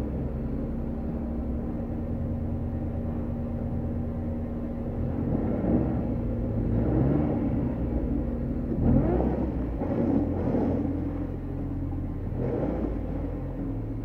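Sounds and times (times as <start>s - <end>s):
car engine revving: 4.9s - 14.0s.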